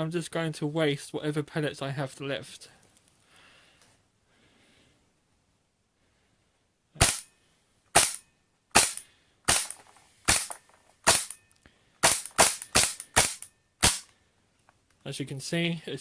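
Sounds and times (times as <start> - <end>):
airsoft pistol shots: 7.0 - 7.3, 7.9 - 11.4, 12.0 - 14.1.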